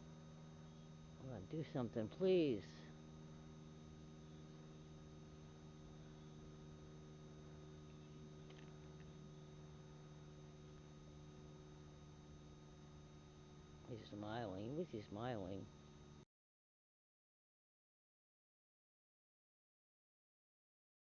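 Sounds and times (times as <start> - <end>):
faint electrical hum: 0.0 - 16.3.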